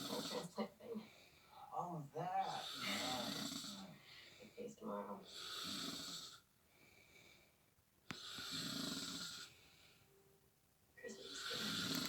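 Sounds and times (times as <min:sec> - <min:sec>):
pet snoring: 0:00.0 - 0:00.6, 0:02.4 - 0:04.0, 0:05.2 - 0:06.5, 0:08.1 - 0:09.6, 0:11.2 - 0:12.0.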